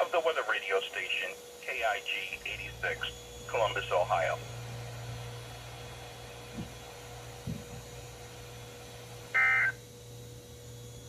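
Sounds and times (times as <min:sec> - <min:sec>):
steady radio carrier hum: 0:00.0 - 0:04.7, 0:09.3 - 0:09.8
electronic signalling tones: 0:09.3 - 0:09.9.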